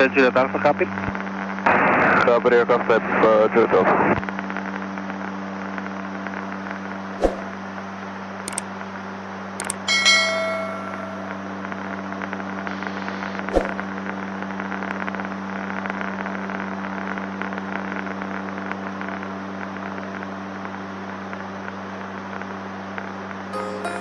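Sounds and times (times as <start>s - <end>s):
propeller aircraft cabin drone: 4.2s - 23.5s
short click: 9.6s - 9.8s.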